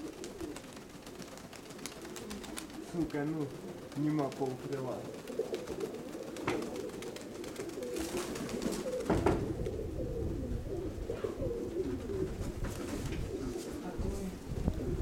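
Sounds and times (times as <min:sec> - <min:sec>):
pigeons cooing: 0:00.0 - 0:15.0
wind rumble on microphone: 0:09.1 - 0:15.0.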